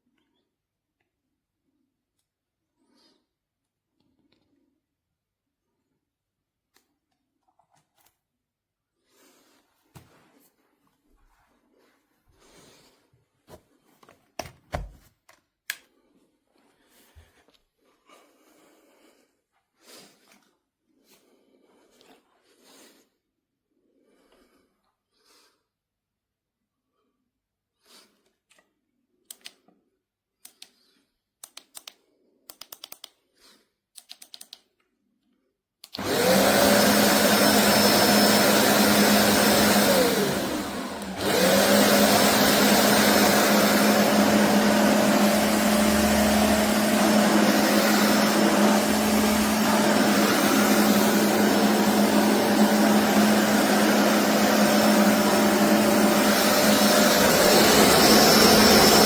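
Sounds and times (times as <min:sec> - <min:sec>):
carpet cleaner motor humming: 0:36.0 - 0:59.0.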